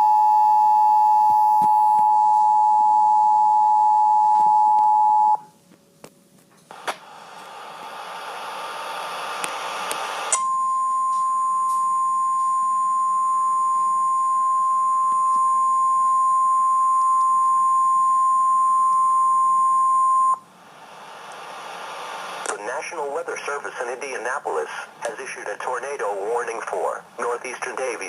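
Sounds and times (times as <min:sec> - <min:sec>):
static hiss: 0:05.7 - 0:10.4, 0:20.5 - 0:28.0.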